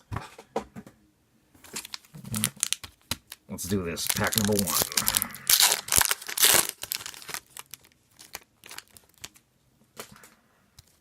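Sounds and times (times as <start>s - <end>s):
wrapper tearing and crinkling: 1.7s - 9.4s.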